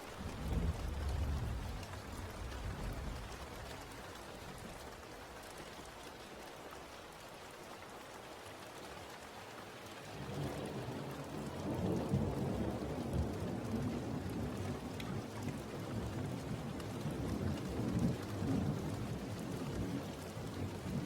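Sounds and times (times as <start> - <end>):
low rumble of thunder: 0.0 - 5.1, 10.2 - 21.0
steady rain falling: 0.0 - 21.0.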